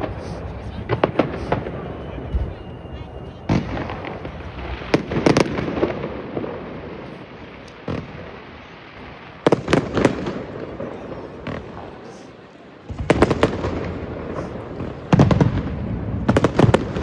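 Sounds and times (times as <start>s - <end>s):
fireworks bangs: 0.0s - 17.0s.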